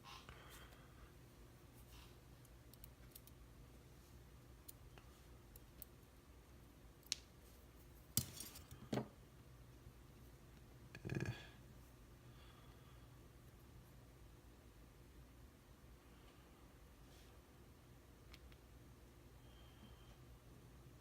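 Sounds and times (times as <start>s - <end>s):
low steady hum: 0.0s - 21.0s.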